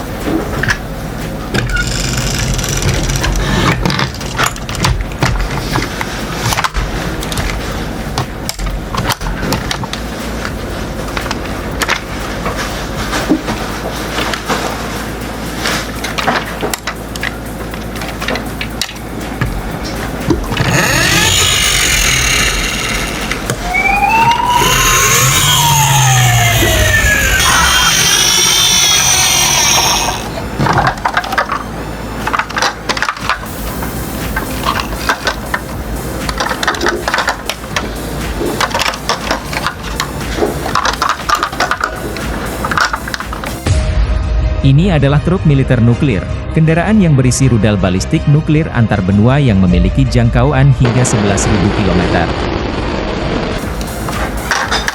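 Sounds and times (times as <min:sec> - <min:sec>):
gliding siren-like tones: 0:20.8 - 0:32.2.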